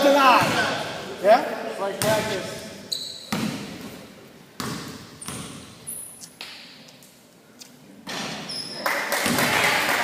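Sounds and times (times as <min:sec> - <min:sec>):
sneaker squeaks: 0:02.6 - 0:04.0, 0:04.6 - 0:06.9, 0:08.2 - 0:08.9.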